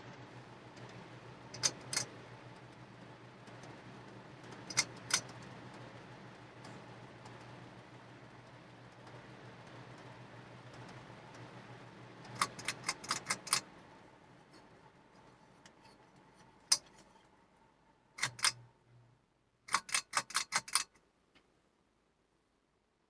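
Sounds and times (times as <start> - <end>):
ceiling fan motor hum: 0.0 - 23.0
sharp clicks and rattle: 0.1 - 13.8, 18.2 - 18.7, 19.7 - 21.0.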